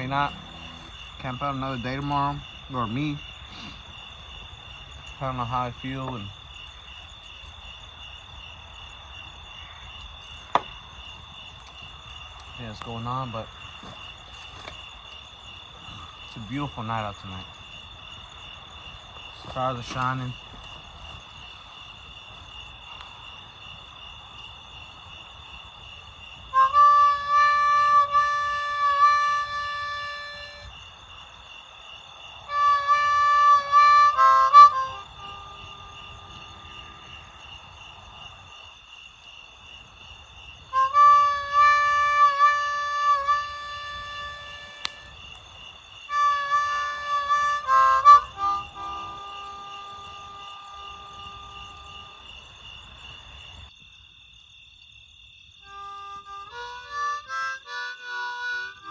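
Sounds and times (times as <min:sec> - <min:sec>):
harmonica playing: 0:00.0 - 0:02.0, 0:26.6 - 0:30.7, 0:32.5 - 0:36.5, 0:40.8 - 0:45.1, 0:46.1 - 0:51.9, 0:55.7 - 0:58.9
crickets chirping: 0:00.0 - 0:58.9.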